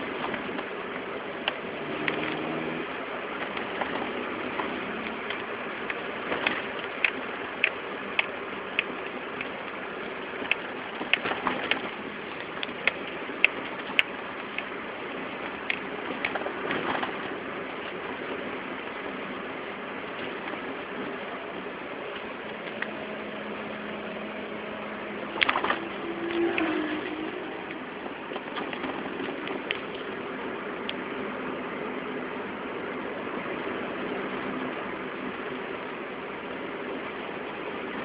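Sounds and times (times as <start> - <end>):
steady noisy background: 0.0 - 38.0
wheel hub clicking and ticking: 3.3 - 19.0, 24.4 - 31.2.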